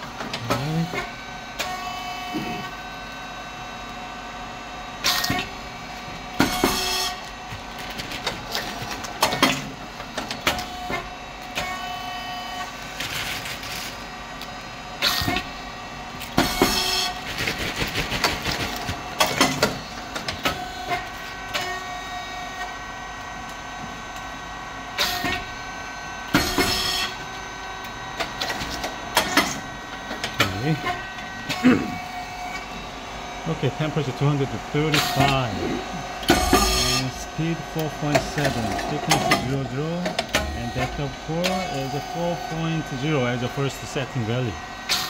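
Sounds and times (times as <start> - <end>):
steady whining tones: 0.0 - 17.4, 18.6 - 45.0
mechanical hum: 0.0 - 45.0
popping machine bursts: 34.4 - 42.8.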